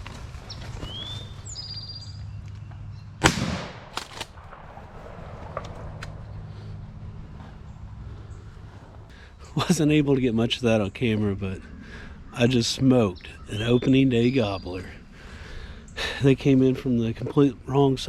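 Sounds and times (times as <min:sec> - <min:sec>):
shotgun blast: 0:03.2 - 0:06.0.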